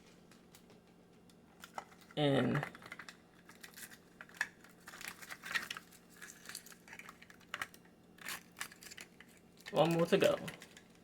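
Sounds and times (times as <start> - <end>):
plastic packaging crinkling: 1.4 - 11.0
plastic pieces clicking: 1.6 - 11.0.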